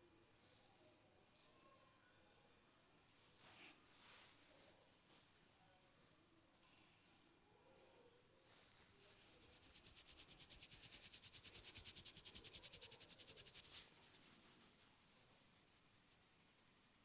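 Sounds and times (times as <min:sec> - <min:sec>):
rubbing strokes on hair: 0:08.4 - 0:16.6.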